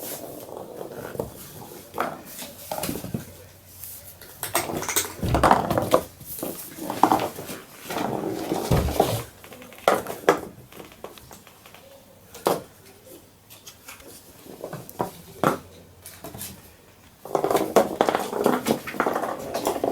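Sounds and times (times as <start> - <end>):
kittens knocking and rustling: 4.2 - 11.8.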